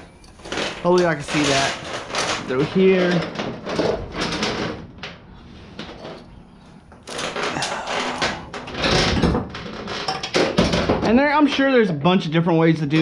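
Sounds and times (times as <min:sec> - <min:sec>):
metal chain rattling and clinking: 0:07.1 - 0:10.9.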